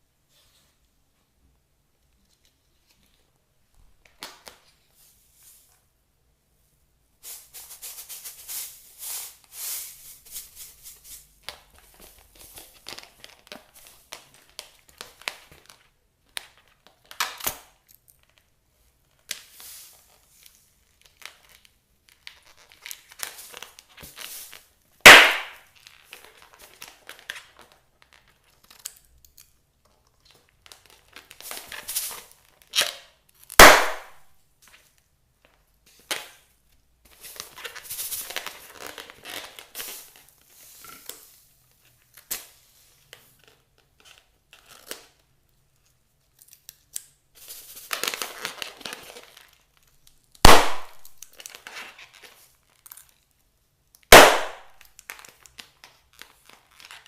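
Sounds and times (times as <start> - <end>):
slime air pops: 25.1 - 25.6, 33.6 - 34.2, 50.4 - 51.1, 54.1 - 54.7.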